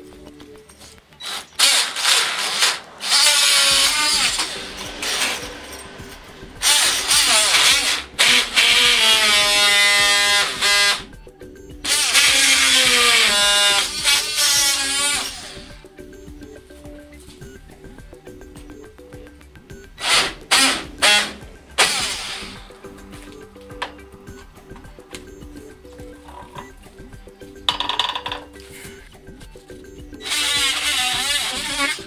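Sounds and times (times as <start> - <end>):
multi-tool blade screeching on metal: 1.2 - 11.1, 11.9 - 15.8, 20.0 - 22.6, 30.2 - 32.0.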